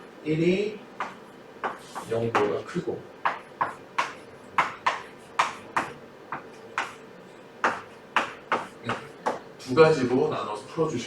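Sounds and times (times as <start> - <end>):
pen tapping on writing surface: 3.2 - 7.0, 7.6 - 9.4.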